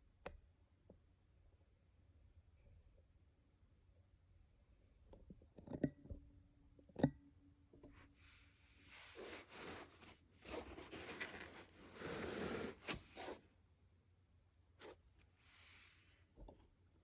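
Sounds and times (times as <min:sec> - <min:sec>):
packaging rustling: 0:09.2 - 0:13.4.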